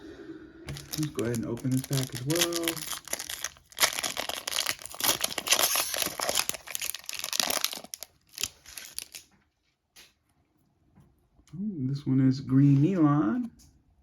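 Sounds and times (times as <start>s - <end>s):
wrapper tearing and crinkling: 0.7s - 9.3s.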